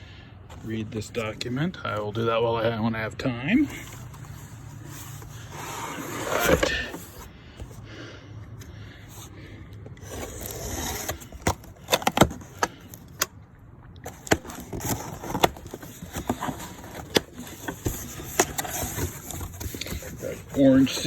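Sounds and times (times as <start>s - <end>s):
packaging rustling and scraping: 3.6s - 7.8s, 8.6s - 13.3s, 14.0s - 21.0s.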